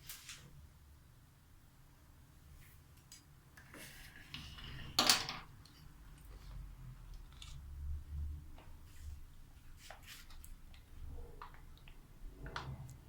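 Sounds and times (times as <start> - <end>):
food preparation rustling and clicks: 5.3 - 7.8.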